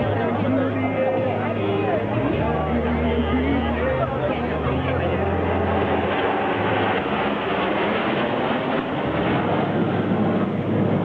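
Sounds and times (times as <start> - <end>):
fighter jet noise: 4.3 - 11.0.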